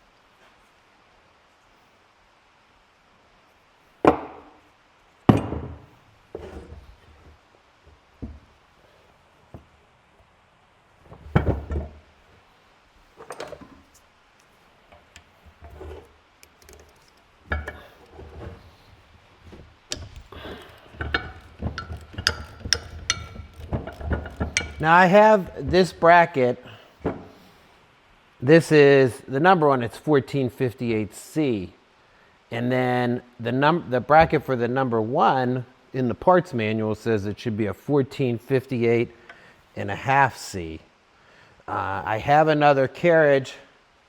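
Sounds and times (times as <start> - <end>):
metal parts knocking on workbench: 19.5 - 25.0.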